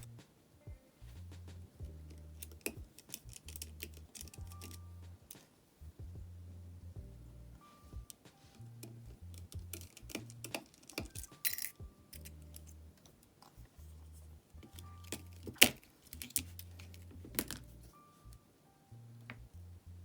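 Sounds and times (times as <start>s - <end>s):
quiet background music: 0.0s - 20.0s
repair tools clicking and tapping: 2.1s - 5.5s, 8.8s - 12.7s, 14.6s - 17.7s.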